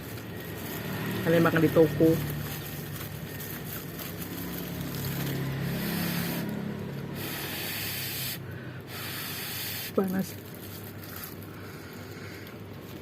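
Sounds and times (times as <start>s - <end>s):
passing vehicle engine hum: 0.0s - 7.6s.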